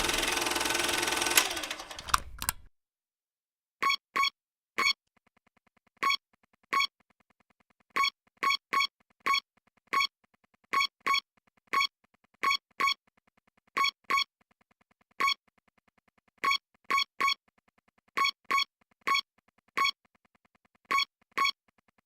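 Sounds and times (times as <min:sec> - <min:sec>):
faint fast ticking: 0:00.0 - 0:02.0.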